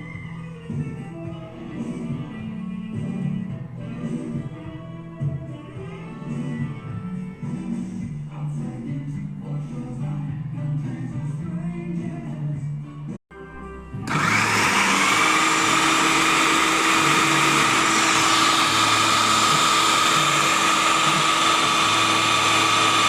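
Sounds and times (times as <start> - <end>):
blender motor whirring: 14.1 - 23.0.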